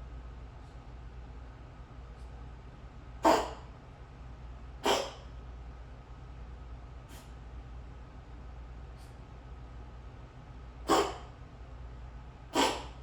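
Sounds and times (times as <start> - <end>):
kitten coughing: 3.2 - 3.7, 4.8 - 5.3, 10.8 - 11.3, 12.5 - 13.0.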